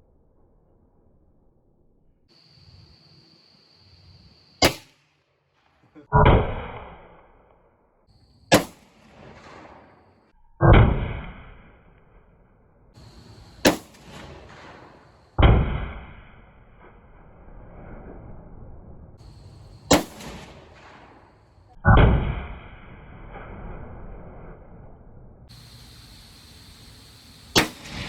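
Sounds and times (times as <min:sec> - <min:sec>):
rifle shot cracks: 0:04.6 - 0:05.1, 0:08.5 - 0:10.2, 0:13.0 - 0:16.9, 0:19.2 - 0:22.6, 0:27.4 - 0:28.0.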